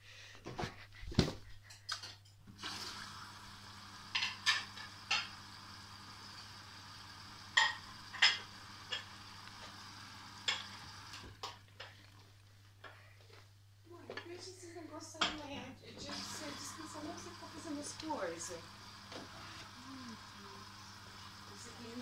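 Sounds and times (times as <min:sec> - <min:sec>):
water filling hiss: 0:02.5 - 0:11.4, 0:16.0 - 0:22.0.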